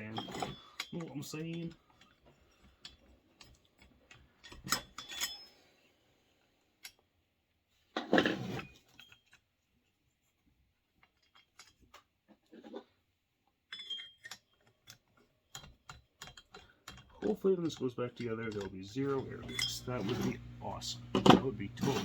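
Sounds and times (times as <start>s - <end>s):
metal parts clicking and rattling: 0.0s - 5.6s, 8.8s - 9.6s, 10.9s - 12.8s, 13.6s - 20.3s.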